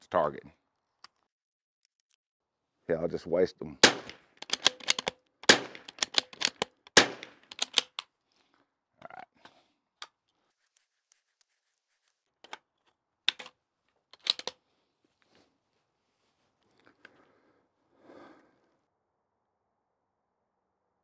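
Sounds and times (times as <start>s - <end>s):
rifle shots: 3.8s - 7.8s
rifle bolt clicks: 3.8s - 8.1s, 13.3s - 13.5s, 14.2s - 14.6s.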